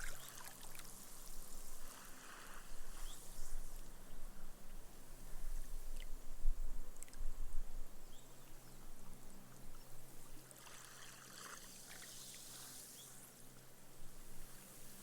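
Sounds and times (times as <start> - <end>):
small waves lapping on sand: 0.0 - 4.0, 10.3 - 13.5
hissing swash of foam: 10.8 - 13.1.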